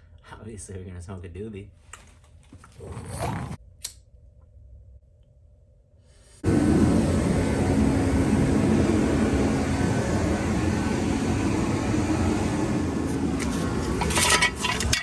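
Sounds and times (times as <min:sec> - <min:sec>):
faint hum: 0:03.8 - 0:15.0
machine rumbling: 0:06.4 - 0:15.0.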